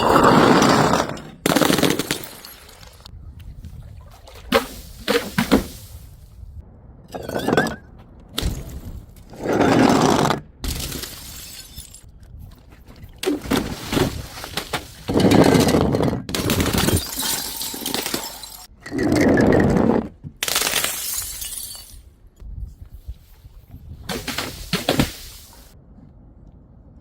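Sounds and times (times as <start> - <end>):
glass bottles shattering: 0.0 - 3.1, 10.7 - 12.1, 16.4 - 18.7, 20.5 - 22.1.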